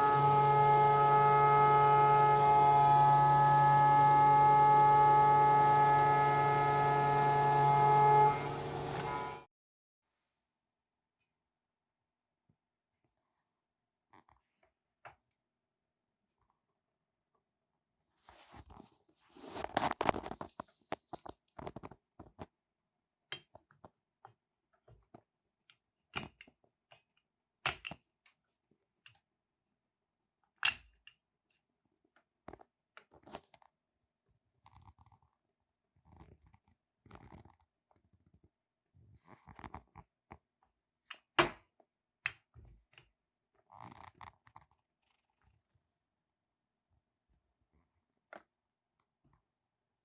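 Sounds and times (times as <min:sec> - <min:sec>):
scraping and rustling: 0:18.1 - 0:22.4.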